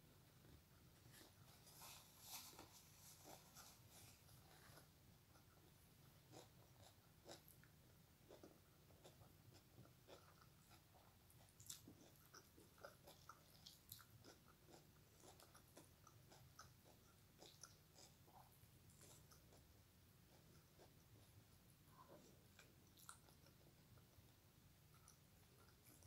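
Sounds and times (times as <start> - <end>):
low steady hum: 0.0 - 26.0
person chewing: 0.4 - 7.7, 8.3 - 24.1.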